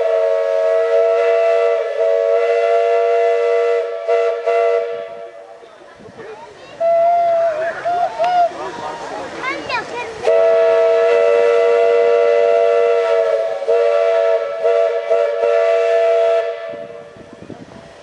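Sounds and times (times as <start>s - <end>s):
locomotive steam whistle blast: 0.0s - 5.5s, 6.8s - 7.4s, 10.2s - 17.4s.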